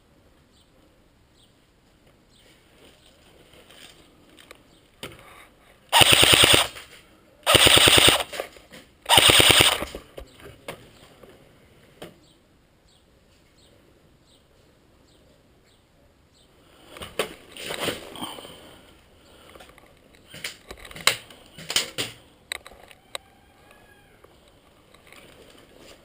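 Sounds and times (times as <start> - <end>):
airsoft gun full-auto bursts: 5.9 - 6.8, 7.4 - 8.4, 9.1 - 9.9
sharp clicks: 5.9 - 6.9, 7.5 - 8.4, 9.1 - 10.0.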